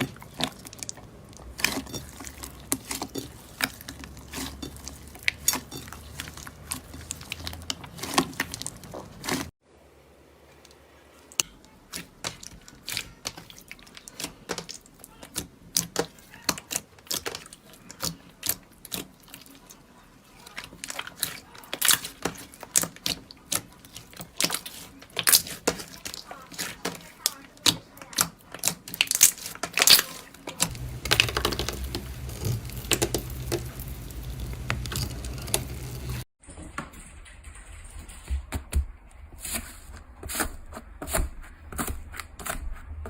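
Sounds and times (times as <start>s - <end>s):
slime crackling and popping: 27.6s - 36.2s.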